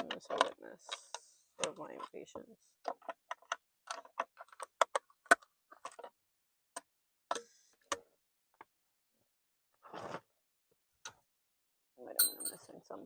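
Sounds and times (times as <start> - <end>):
plastic and metal parts clicking: 0.0 - 2.1, 2.8 - 6.2.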